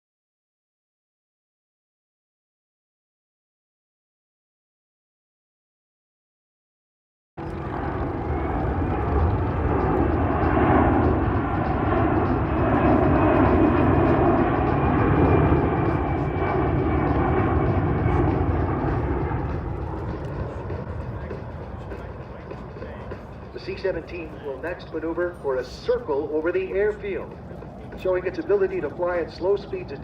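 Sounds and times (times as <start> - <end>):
faint high engine whine: 7.4 - 30.0
jet aircraft flying past: 7.4 - 30.0.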